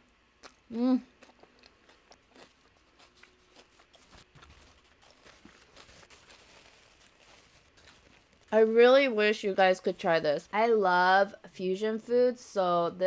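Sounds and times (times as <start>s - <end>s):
chewing crunchy chips: 0.3s - 8.6s.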